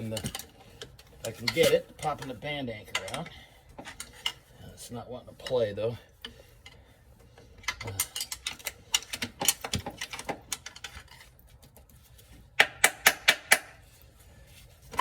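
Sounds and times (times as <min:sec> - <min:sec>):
metal tool clicking and tapping: 0:12.6 - 0:13.8.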